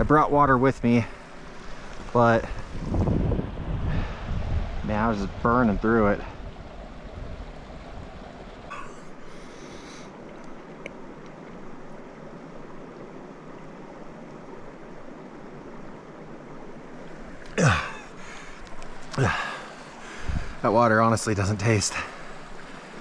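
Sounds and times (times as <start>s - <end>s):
creek water running: 0.0s - 23.0s
person clearing throat: 8.7s - 9.0s, 17.6s - 18.0s.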